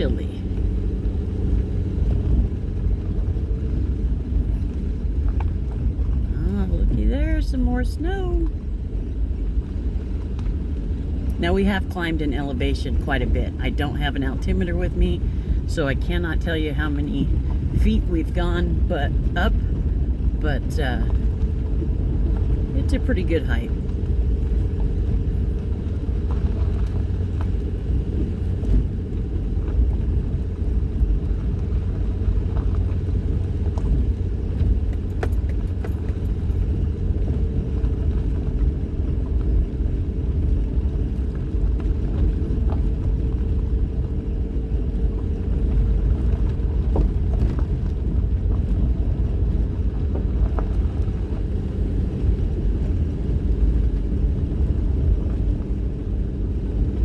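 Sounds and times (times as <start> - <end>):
vehicle engine and road rumble: 0.0 - 57.0.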